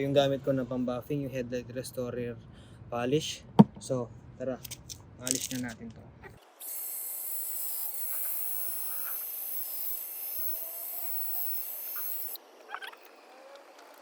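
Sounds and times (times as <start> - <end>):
electric drill buffing plastic: 6.6 - 12.4.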